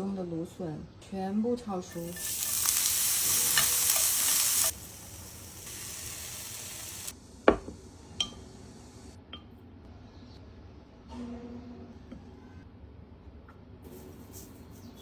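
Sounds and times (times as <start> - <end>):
food sizzling in a frying pan: 1.9 - 7.1.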